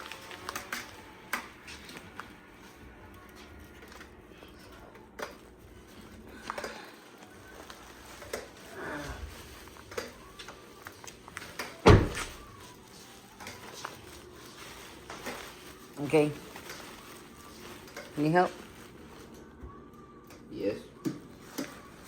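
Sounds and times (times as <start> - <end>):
objects being handled: 3.4 - 19.5.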